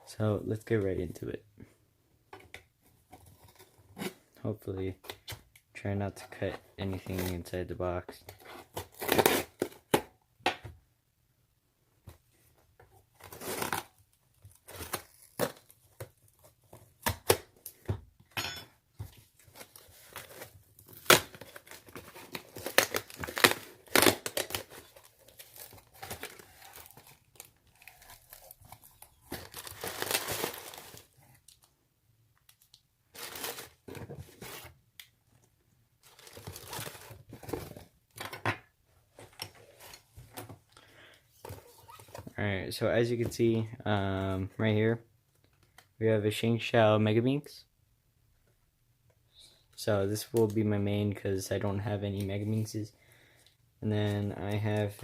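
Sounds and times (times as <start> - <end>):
packaging crinkling: 19.5 - 31.4
cardboard box ripping: 20.1 - 28.6, 29.3 - 31.1.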